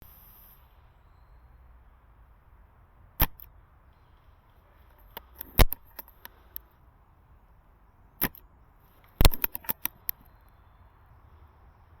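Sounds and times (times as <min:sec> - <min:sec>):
light clicks: 0:04.8 - 0:06.7, 0:09.0 - 0:10.6
airsoft rifle snaps: 0:05.1 - 0:06.6, 0:08.2 - 0:08.4, 0:09.1 - 0:10.2.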